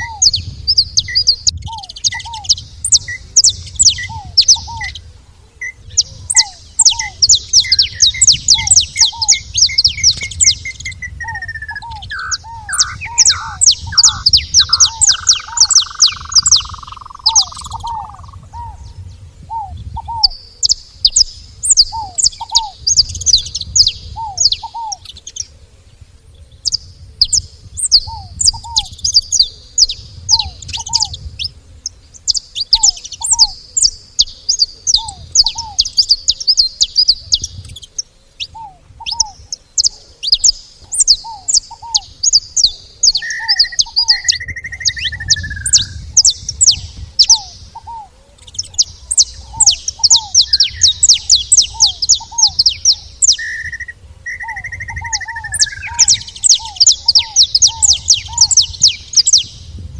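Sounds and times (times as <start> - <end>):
finches chirping: 0.0 - 5.0, 5.6 - 25.5, 26.6 - 59.8.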